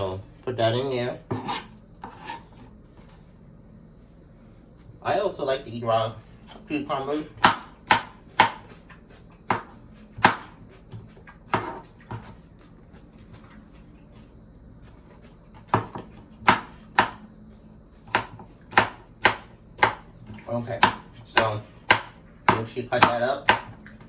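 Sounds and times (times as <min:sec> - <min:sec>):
knife chopping on cutting board: 0:01.3 - 0:02.5, 0:07.4 - 0:12.4, 0:15.6 - 0:17.2, 0:18.0 - 0:20.1, 0:20.7 - 0:23.9.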